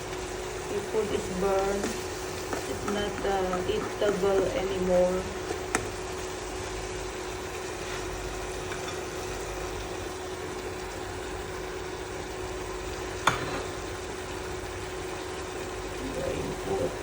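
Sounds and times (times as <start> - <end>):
food sizzling in a frying pan: 0.0 - 17.0
steady hum: 0.0 - 17.0
utensil knocking a pan: 1.8 - 4.6, 13.2 - 13.7.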